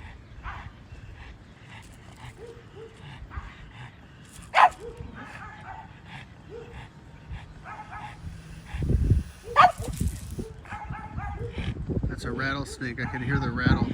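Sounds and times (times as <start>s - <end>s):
dog barking loudly: 4.5s - 5.9s, 9.4s - 11.6s
dog yipping and whimpering: 9.4s - 9.9s.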